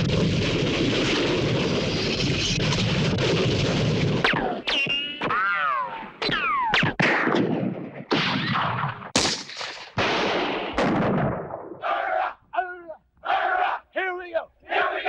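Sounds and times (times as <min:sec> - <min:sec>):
echoing gunshots: 0:06.9 - 0:12.2
people shouting: 0:11.8 - 0:15.0.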